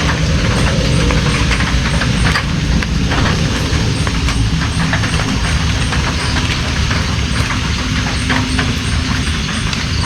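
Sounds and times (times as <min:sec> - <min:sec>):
heavy rain: 0:00.0 - 0:09.4.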